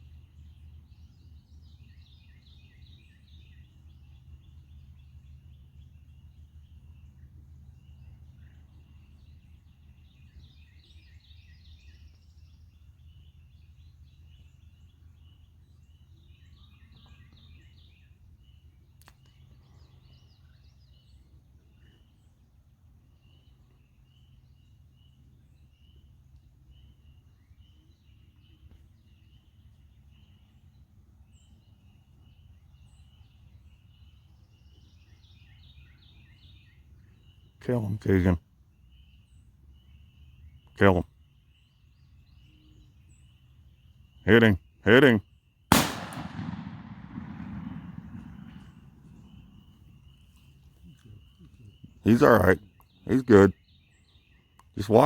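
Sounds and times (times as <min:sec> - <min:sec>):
songbirds chirping: 0:00.0 - 0:55.0
low steady rumble: 0:45.7 - 0:52.0.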